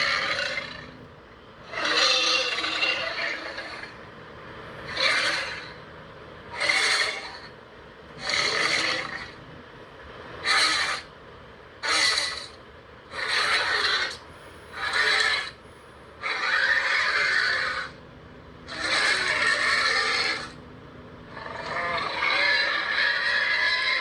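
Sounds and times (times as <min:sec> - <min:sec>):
monster raspy hissing snarls: 0:08.2 - 0:09.4, 0:21.3 - 0:24.0.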